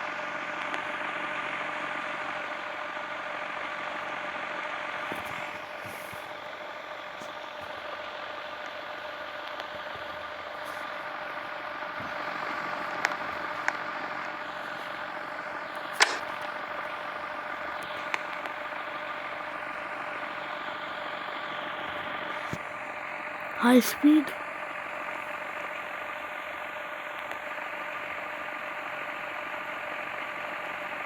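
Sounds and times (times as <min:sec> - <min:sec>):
fan motor hum with whine: 0:00.0 - 0:23.6, 0:24.4 - 0:31.0
sharp clicks: 0:16.0 - 0:16.5.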